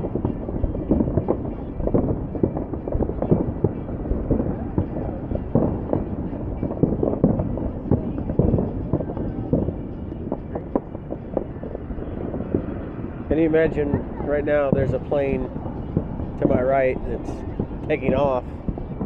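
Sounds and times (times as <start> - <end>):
distant fireworks bangs and crackles: 0.0 - 19.0
low rumble: 0.0 - 19.0.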